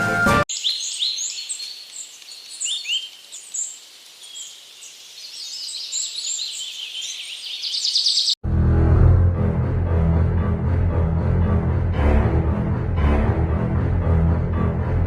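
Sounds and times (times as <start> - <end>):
small birds chirping: 0.5 - 8.4.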